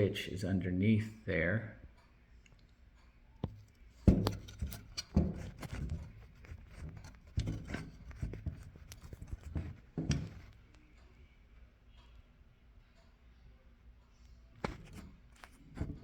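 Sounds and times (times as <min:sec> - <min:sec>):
rubbing and scraping: 0:03.4 - 0:10.6, 0:14.6 - 0:16.0.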